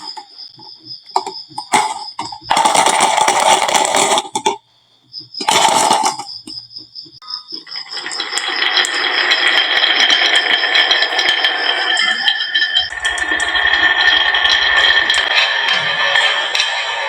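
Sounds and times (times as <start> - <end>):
glass marbles rattling down wooden run: 1.2 - 4.3, 7.6 - 17.0.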